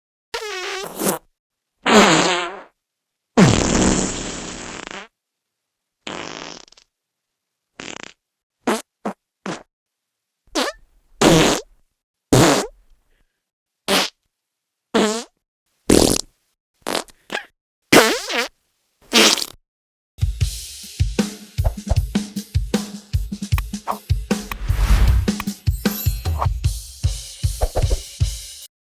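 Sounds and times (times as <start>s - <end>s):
fart sounds: 0.4s - 2.8s, 3.4s - 5.1s, 6.1s - 6.9s, 7.8s - 9.7s, 10.6s - 11.7s, 12.3s - 12.7s, 13.9s - 14.2s, 15.0s - 17.1s, 18.0s - 18.5s, 19.1s - 19.6s.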